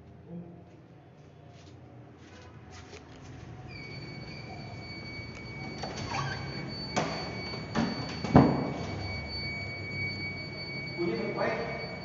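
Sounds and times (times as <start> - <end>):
fire alarm buzzer tone: 3.6 - 12.0.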